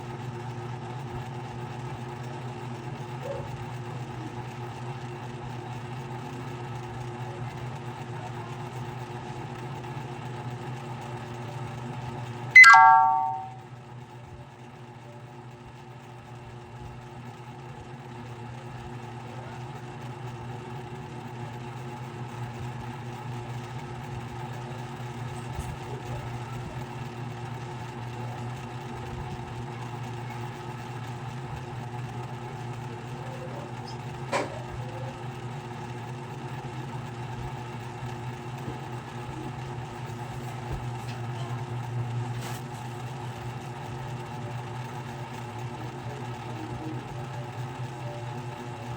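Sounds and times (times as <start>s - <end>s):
ceiling fan motor hum: 15.4s - 48.9s.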